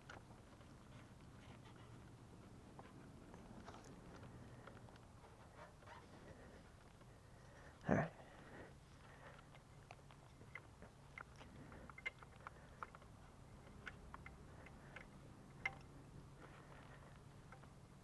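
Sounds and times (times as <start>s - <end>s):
faint low hum: 0.0s - 18.0s
small clicks of parts being handled: 8.9s - 17.8s.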